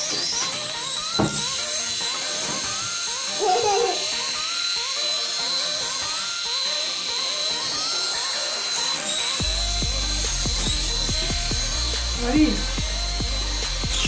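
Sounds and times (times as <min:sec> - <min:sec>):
toy helicopter motor whine: 0:00.0 - 0:14.0
knocks: 0:01.2 - 0:01.6.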